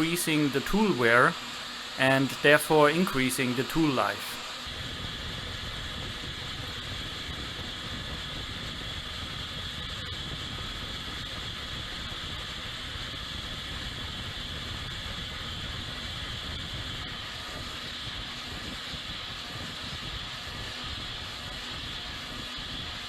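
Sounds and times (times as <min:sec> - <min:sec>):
milling machine cutting steel: 0:00.0 - 0:04.6
high-pitched machine whine: 0:00.0 - 0:23.0.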